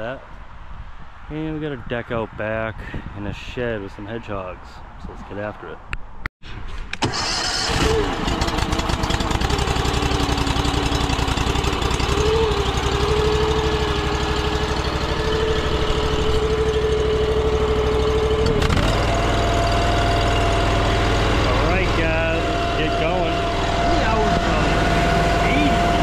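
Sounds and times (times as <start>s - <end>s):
pressure washer engine whining: 7.0s - 26.0s.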